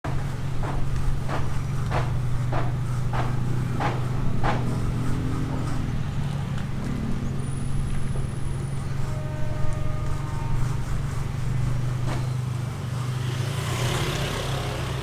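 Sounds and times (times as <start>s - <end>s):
sharp knocks: 0.1s - 6.0s.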